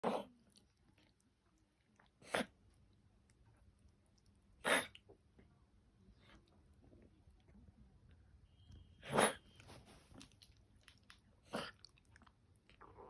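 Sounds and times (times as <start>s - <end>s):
dog sneezing: 4.6s - 4.9s, 9.0s - 9.4s
faint snuffling: 9.0s - 10.3s.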